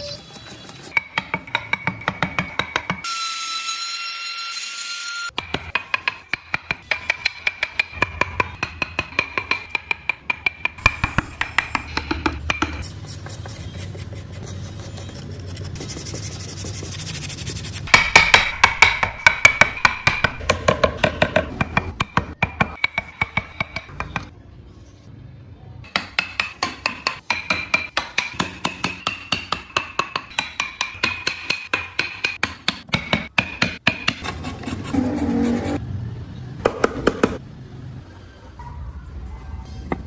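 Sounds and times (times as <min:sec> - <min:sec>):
mallet tapping chisel into wood: 0:25.9 - 0:34.2.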